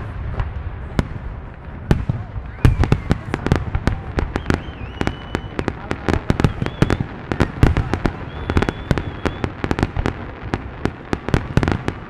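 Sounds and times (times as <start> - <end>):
fireworks cracking and popping: 0.0 - 12.0
thin whistle: 2.4 - 3.4, 4.3 - 5.7, 6.5 - 7.0, 8.2 - 9.5.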